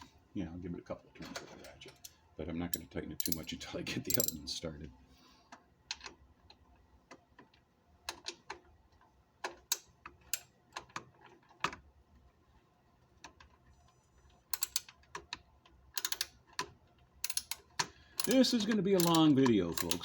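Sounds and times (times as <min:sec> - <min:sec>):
socket ratchet clicking: 0:14.5 - 0:15.0, 0:16.0 - 0:20.0.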